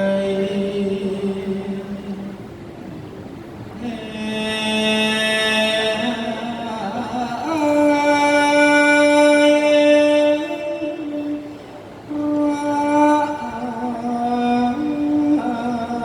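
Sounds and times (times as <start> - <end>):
person singing long notes: 0.0 - 2.5, 3.8 - 16.0.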